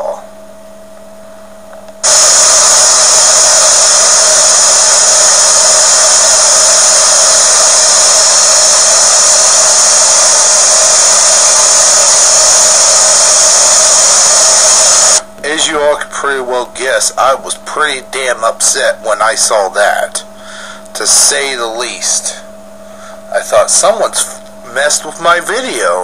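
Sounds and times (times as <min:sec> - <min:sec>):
static hiss: 0:01.8 - 0:16.0.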